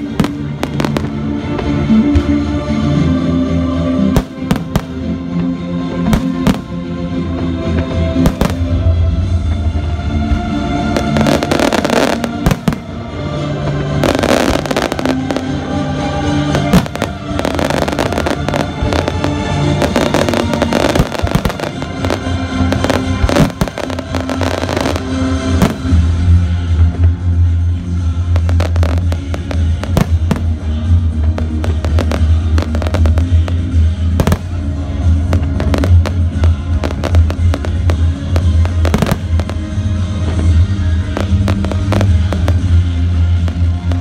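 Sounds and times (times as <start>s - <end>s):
fireworks crackling: 0.0s - 1.9s, 8.1s - 8.8s, 10.9s - 26.3s, 28.2s - 44.0s
loud music: 0.0s - 44.0s
fireworks bangs: 16.2s - 26.1s, 28.4s - 34.6s, 40.3s - 42.8s.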